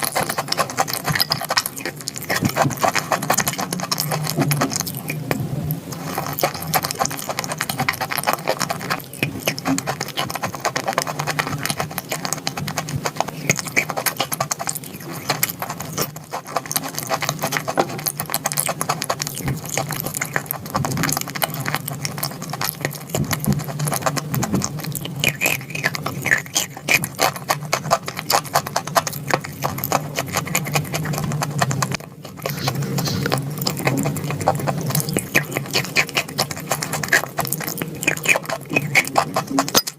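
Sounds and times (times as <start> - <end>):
crunching and chewing chalk: 0.0 - 39.9.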